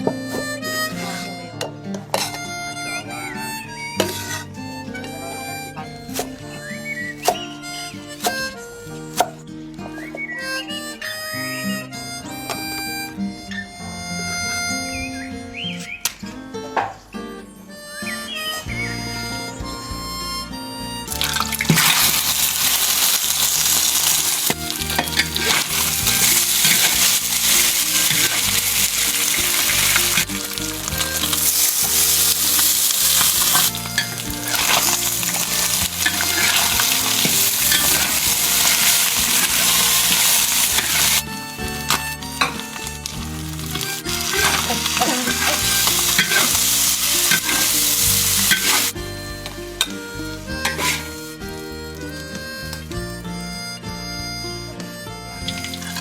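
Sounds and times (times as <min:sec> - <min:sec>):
soft background music: 0:00.0 - 0:56.0
food sizzling in a hot pan: 0:21.2 - 0:41.3, 0:42.5 - 0:48.9, 0:50.7 - 0:51.2, 0:55.5 - 0:56.0.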